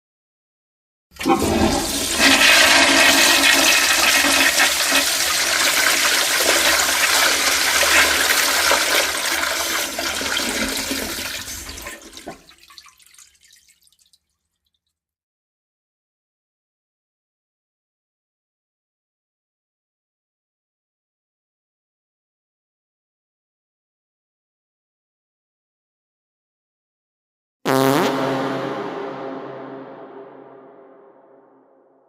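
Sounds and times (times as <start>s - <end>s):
rushing water: 1.2s - 14.0s.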